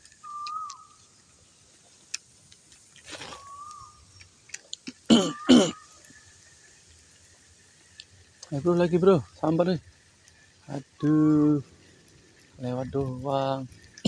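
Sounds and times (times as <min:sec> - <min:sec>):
whistled call: 0:00.2 - 0:00.9, 0:03.3 - 0:04.0
harsh coughs: 0:05.1 - 0:05.8.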